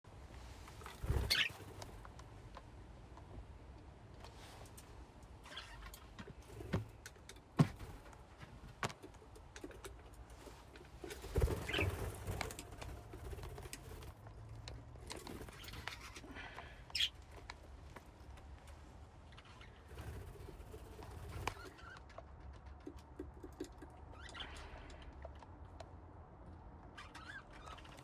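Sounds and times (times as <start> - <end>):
budgies chirping: 1.0 - 1.6, 11.3 - 12.9, 15.2 - 17.2, 27.0 - 28.0.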